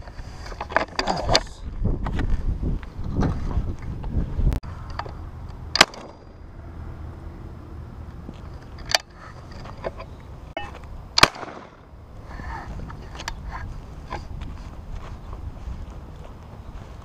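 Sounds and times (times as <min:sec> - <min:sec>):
shotgun shots: 0:05.8 - 0:06.2, 0:11.2 - 0:11.9.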